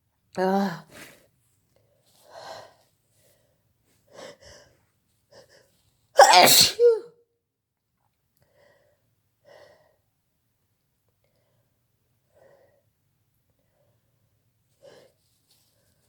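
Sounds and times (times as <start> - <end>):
person sneezing: 6.2 - 7.0.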